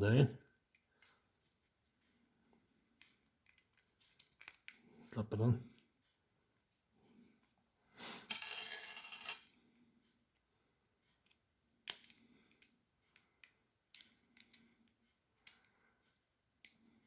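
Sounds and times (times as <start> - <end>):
sharp clicks of handled parts: 3.0 - 4.8.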